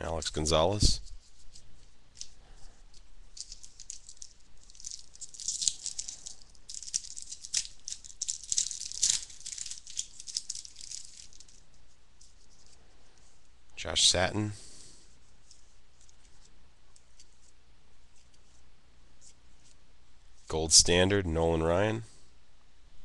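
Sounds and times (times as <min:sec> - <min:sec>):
trading cards rustling: 0:00.2 - 0:13.4, 0:15.2 - 0:18.6.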